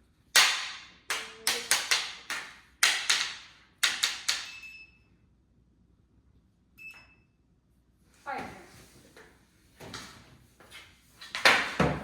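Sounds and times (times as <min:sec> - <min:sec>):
hockey sticks clacking: 0:11.2 - 0:12.0.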